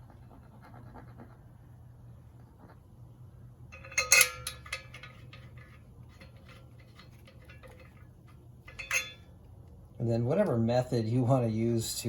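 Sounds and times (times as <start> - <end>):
metal bolts clinking and rattling: 3.7 - 9.5.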